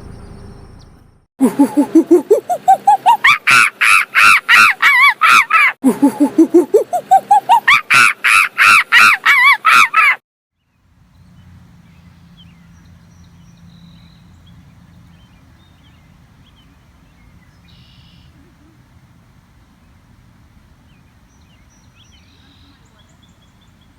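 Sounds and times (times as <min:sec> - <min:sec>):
animal harsh calls: 0:01.4 - 0:10.2.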